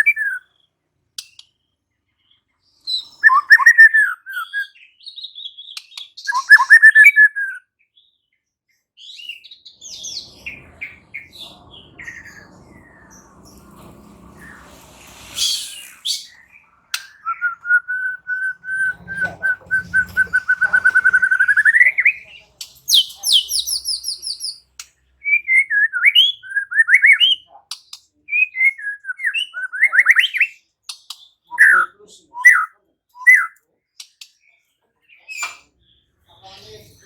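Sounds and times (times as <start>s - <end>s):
bird singing whistled notes: 2.8s - 7.7s, 15.3s - 22.3s, 22.9s - 27.5s, 28.3s - 30.6s, 31.2s - 33.6s
harsh bird note: 11.2s - 21.9s.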